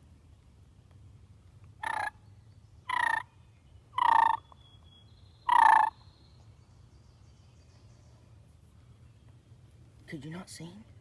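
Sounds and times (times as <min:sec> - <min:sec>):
bird calling: 0:01.8 - 0:02.2, 0:02.8 - 0:08.2.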